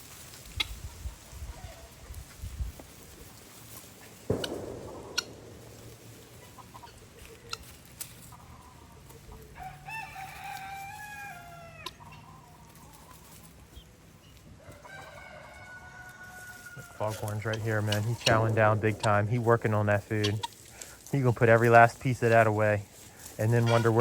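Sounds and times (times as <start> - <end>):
sharp knock: 4.3 - 5.9
rooster crowing: 9.5 - 12.0, 14.6 - 17.2.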